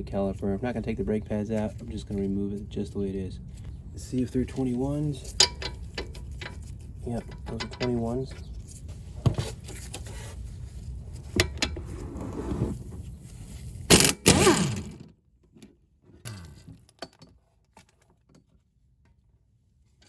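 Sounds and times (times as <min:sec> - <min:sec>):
hand tools clicking and clanking: 0:04.2 - 0:08.5, 0:13.9 - 0:15.0.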